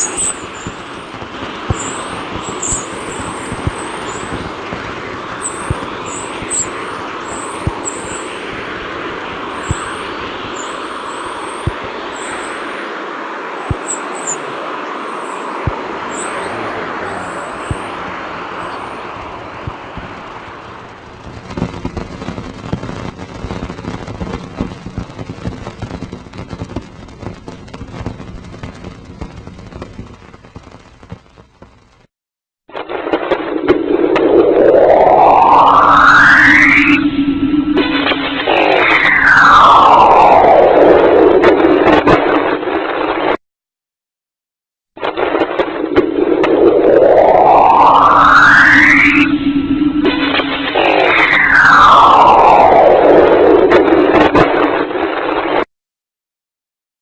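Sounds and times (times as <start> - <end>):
irregular crackling and popping: 0.0 - 12.7, 15.4 - 43.4, 45.0 - 55.7
steady rushing hiss: 0.0 - 31.9
low rumble: 14.5 - 30.2, 33.6 - 41.9, 45.8 - 54.4.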